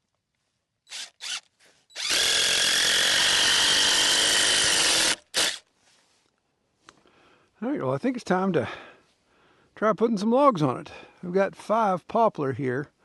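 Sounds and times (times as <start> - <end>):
power drill driving screws: 0.9 - 5.7.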